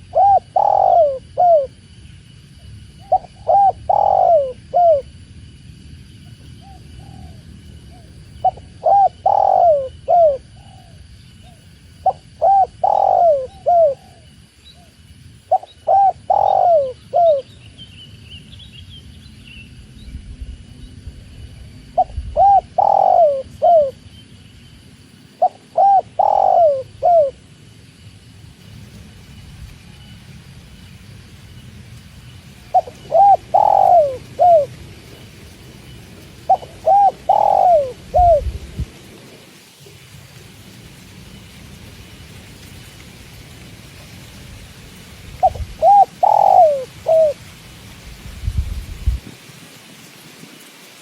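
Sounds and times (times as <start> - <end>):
dove cooing: 0.0 - 1.8, 3.0 - 5.1, 6.6 - 14.9, 15.5 - 17.5, 21.9 - 24.0, 25.4 - 27.5, 32.6 - 34.8, 36.3 - 38.6, 45.4 - 47.4.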